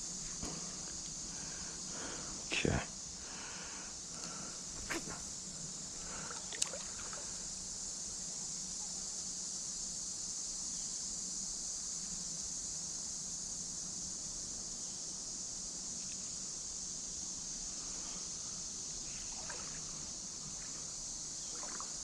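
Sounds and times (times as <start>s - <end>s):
creek water running: 5.9s - 7.6s, 19.1s - 22.0s.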